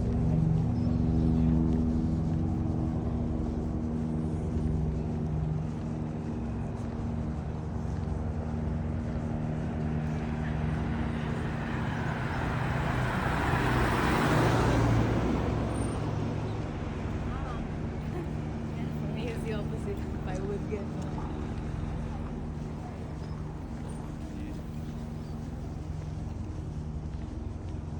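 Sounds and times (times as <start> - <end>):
vehicle engine humming: 0.0 - 27.9
vehicle passing road noise: 9.0 - 27.9.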